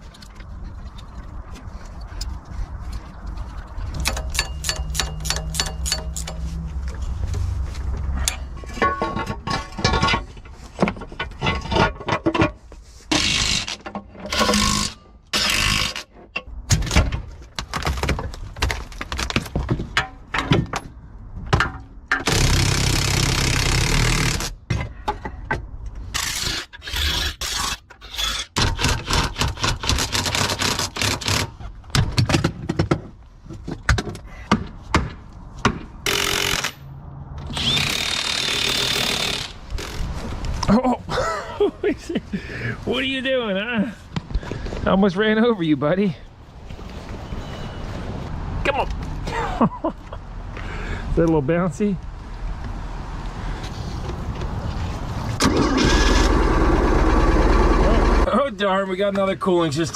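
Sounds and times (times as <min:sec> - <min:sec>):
metal tools clicking and scraping: 0:03.5 - 0:07.0, 0:08.1 - 0:10.5.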